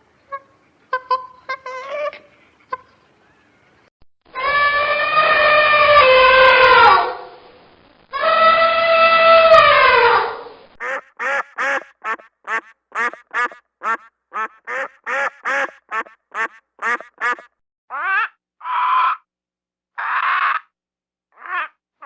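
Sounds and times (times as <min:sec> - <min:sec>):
long pitched animal call: 0:04.3 - 0:07.3, 0:08.1 - 0:17.5
duck quacking: 0:10.8 - 0:17.5.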